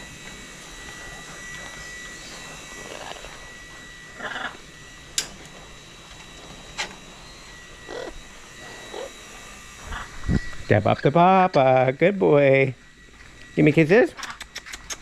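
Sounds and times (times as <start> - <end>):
steady high tone: 0.0 - 14.2
parrot calls: 2.3 - 3.4, 4.1 - 4.7, 7.9 - 9.2, 9.8 - 11.2
sharp clicks: 14.2 - 15.0.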